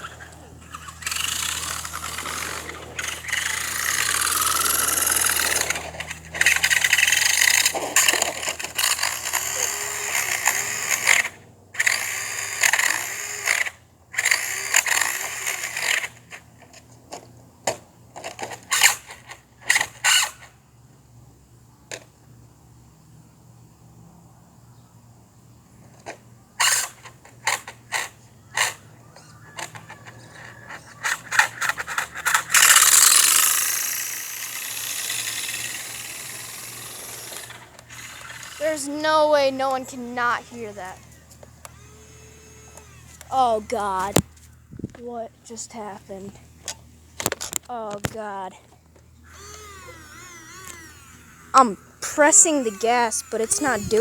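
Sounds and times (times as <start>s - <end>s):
rc car running: 0.0s - 16.9s, 17.7s - 20.6s, 26.0s - 44.5s, 49.2s - 54.0s
mechanical clicking and ratcheting: 0.7s - 16.1s, 31.0s - 38.6s.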